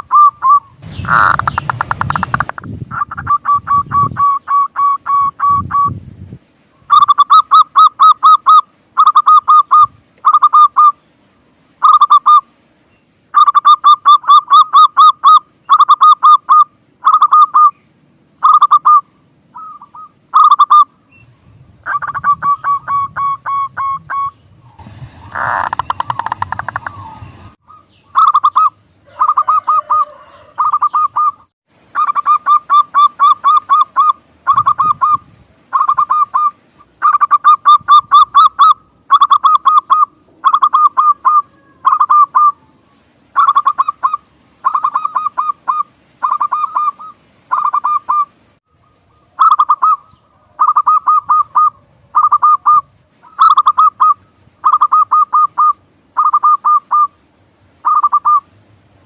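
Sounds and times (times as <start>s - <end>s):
dove cooing in staccato bursts: 0.0s - 5.7s, 6.9s - 11.0s, 25.2s - 27.5s, 28.1s - 48.4s, 49.4s - 57.2s.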